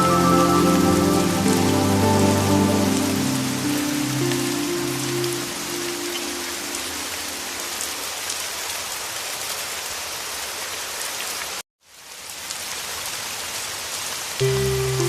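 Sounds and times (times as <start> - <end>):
soft music tones: 0.0 - 7.5, 14.4 - 15.0
heavy rain: 0.0 - 15.0.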